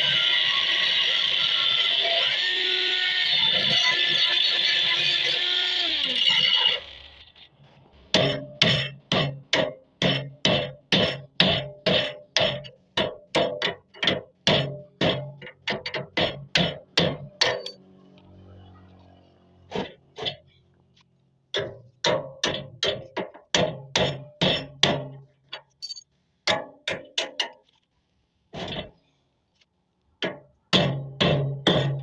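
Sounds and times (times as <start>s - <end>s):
hammer striking metal: 17.0s - 17.8s, 25.8s - 26.7s.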